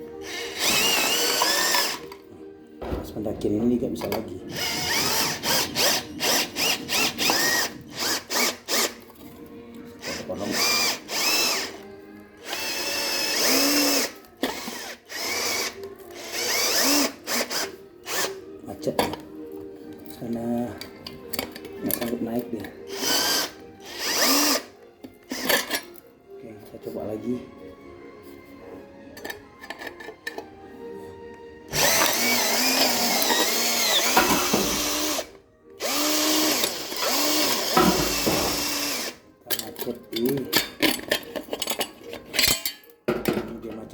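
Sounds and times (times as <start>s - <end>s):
electric drill whining: 0.0s - 2.2s, 4.5s - 9.0s, 10.0s - 18.4s, 22.9s - 24.7s, 31.7s - 39.2s.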